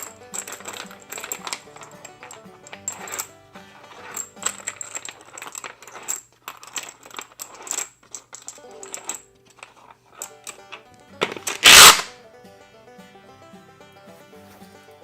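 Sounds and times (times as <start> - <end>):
cartridges clinking in a magazine: 0.0 - 3.3, 4.0 - 12.1
background music: 0.0 - 5.5, 8.5 - 15.0.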